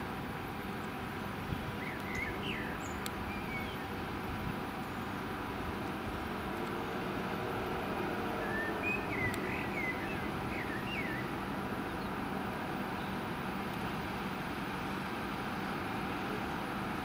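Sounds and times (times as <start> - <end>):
fire engine pumps rumbling: 0.0 - 17.0
small bird chirping: 1.7 - 3.9, 8.4 - 11.3.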